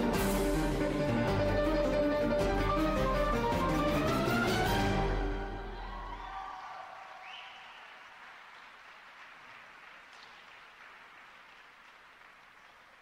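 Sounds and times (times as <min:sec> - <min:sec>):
music: 0:00.0 - 0:06.4
crowd applauding: 0:02.6 - 0:13.0.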